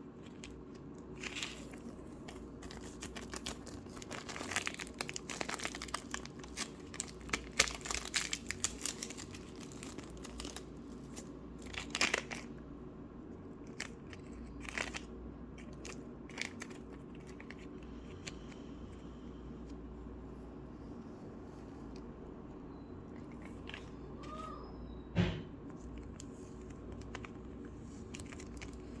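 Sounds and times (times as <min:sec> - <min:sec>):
slime crackling and popping: 0:00.3 - 0:12.5.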